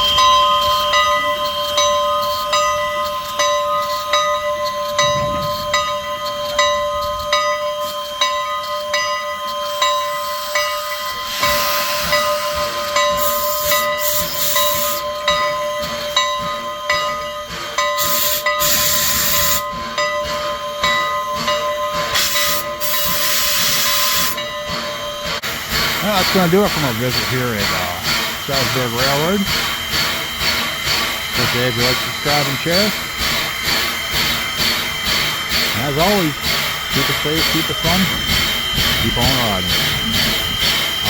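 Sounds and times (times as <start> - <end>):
steam locomotive hissing: 0.0 - 41.0
steam venting: 9.6 - 15.1, 18.0 - 19.7, 22.0 - 24.4, 25.3 - 41.0.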